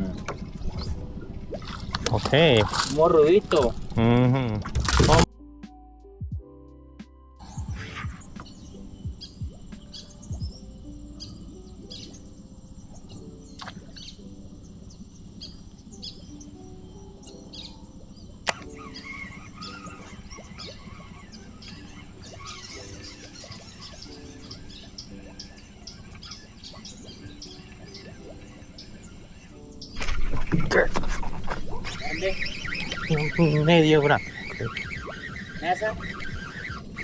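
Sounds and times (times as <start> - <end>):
bird chirps: 0.0 - 4.1, 7.4 - 37.0
soft melodic background music: 0.0 - 37.0
sharp click: 4.7 - 5.3, 13.6 - 13.9, 18.5 - 18.7.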